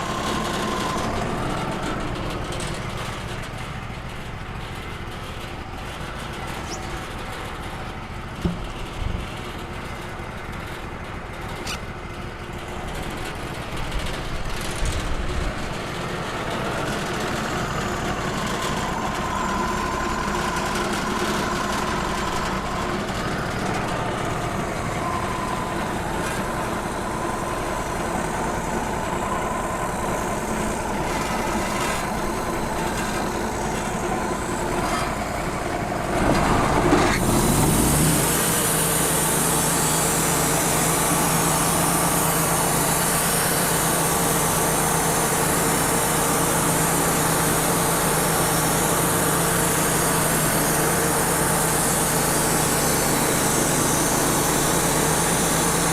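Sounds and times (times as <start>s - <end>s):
band sawmill running: 0.0s - 55.9s
high whine: 16.8s - 55.9s.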